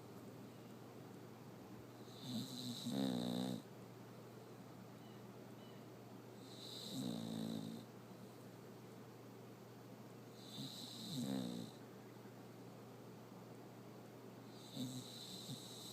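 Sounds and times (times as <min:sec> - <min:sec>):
dog snoring: 0:02.0 - 0:03.7, 0:06.4 - 0:07.9, 0:10.4 - 0:11.8, 0:14.5 - 0:15.9.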